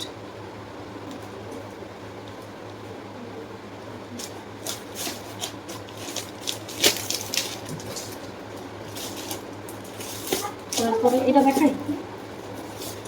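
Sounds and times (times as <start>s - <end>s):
low fan hum: 0.0s - 13.0s
clothes and wrapping rustling: 4.2s - 13.0s.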